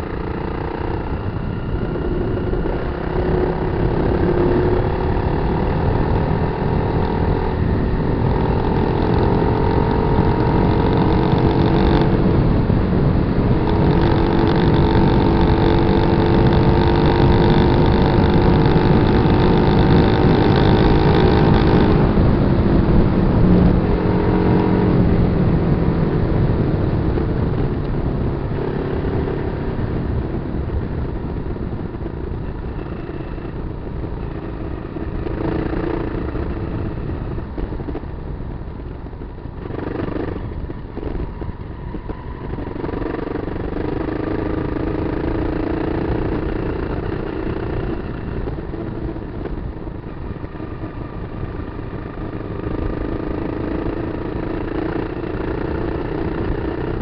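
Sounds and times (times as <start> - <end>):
motorcycle engine revving: 0.0 - 57.0.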